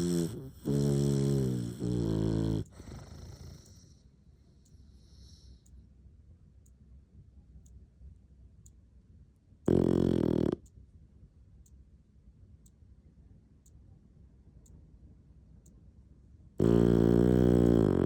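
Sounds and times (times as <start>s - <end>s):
dog snoring: 0.0s - 4.0s, 9.7s - 10.6s, 16.6s - 18.0s
faint ticking: 0.4s - 4.0s, 4.6s - 5.8s, 9.6s - 10.8s
faint breathing: 2.6s - 5.8s.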